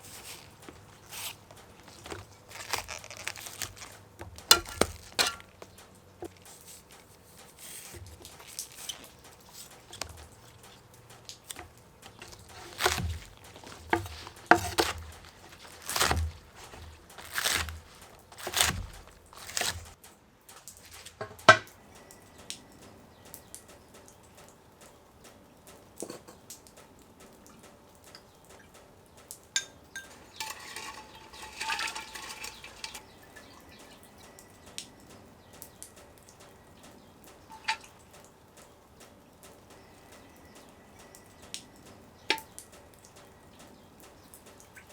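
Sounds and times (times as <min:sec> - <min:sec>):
short rustling noise: 0:11.4 - 0:20.0.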